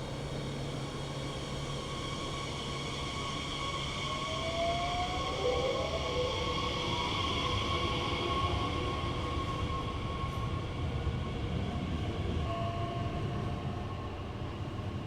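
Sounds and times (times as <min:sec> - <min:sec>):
train rumbling: 0:00.0 - 0:15.0
train wheels squealing: 0:00.0 - 0:15.0.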